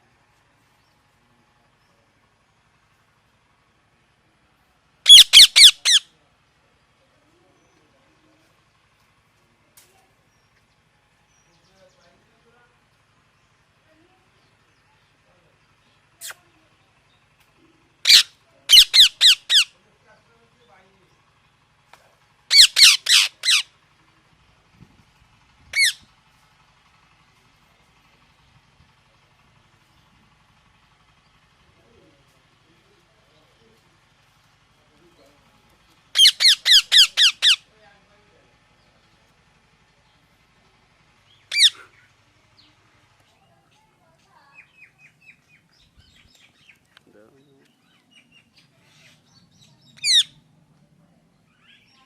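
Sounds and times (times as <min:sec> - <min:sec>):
parrot calling harshly: 0:05.0 - 0:06.1, 0:18.0 - 0:19.8, 0:22.5 - 0:23.7, 0:25.7 - 0:26.0, 0:36.1 - 0:37.7, 0:41.5 - 0:42.1, 0:49.9 - 0:50.4.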